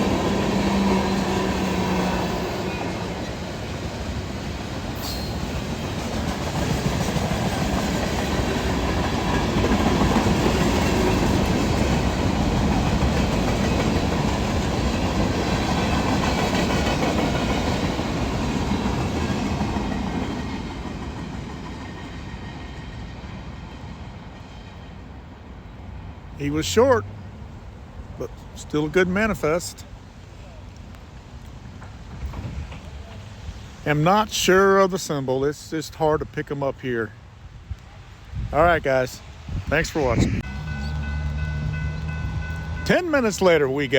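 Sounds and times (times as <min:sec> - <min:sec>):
train wheels clacking over rail joints: 0:04.9 - 0:24.5, 0:31.7 - 0:33.4.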